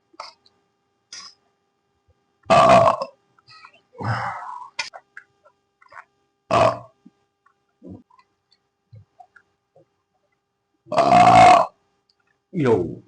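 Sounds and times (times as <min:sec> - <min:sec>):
person belching loudly: 0:02.5 - 0:03.2, 0:06.5 - 0:06.9, 0:10.9 - 0:11.8.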